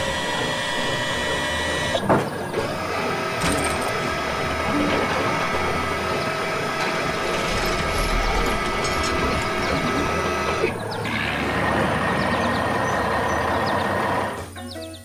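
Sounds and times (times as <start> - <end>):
mechanical whirring and ratcheting: 0.0 - 14.4.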